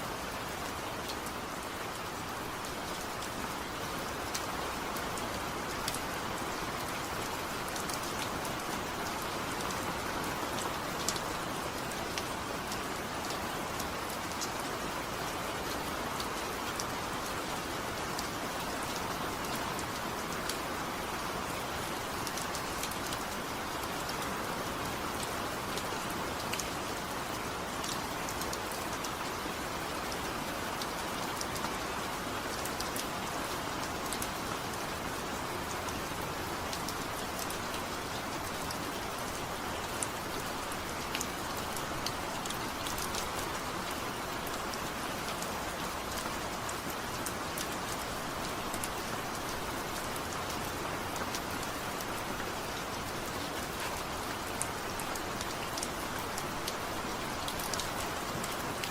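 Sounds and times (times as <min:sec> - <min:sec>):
heavy rain falling: 0:00.0 - 0:58.9.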